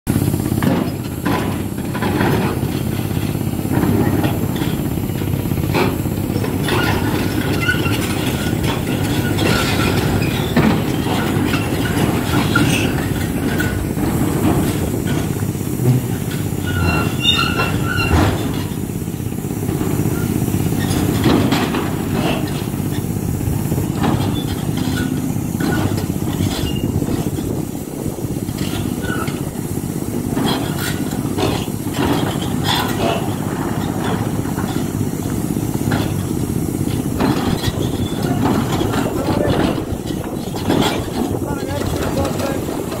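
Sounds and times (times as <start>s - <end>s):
diesel engine of excavator: 0.1s - 43.0s
steel squealing against stone: 16.6s - 18.3s.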